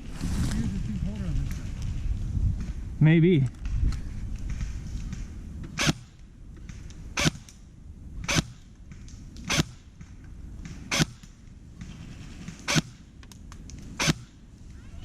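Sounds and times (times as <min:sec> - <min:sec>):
airsoft rifle shots: 0:04.4 - 0:07.6, 0:08.2 - 0:13.2, 0:13.8 - 0:14.4.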